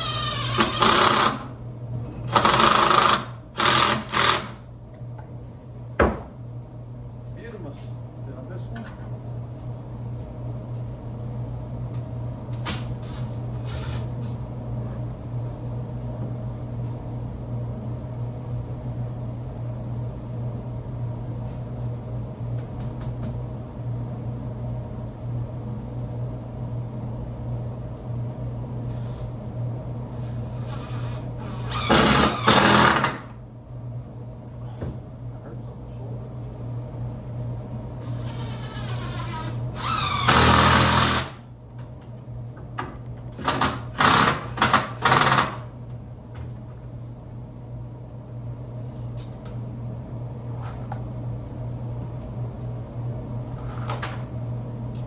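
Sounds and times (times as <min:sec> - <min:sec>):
power drill running: 0:00.0 - 0:01.5, 0:02.3 - 0:04.6, 0:30.7 - 0:33.3, 0:38.2 - 0:41.4, 0:43.4 - 0:45.6
low electric hum: 0:00.0 - 0:55.0.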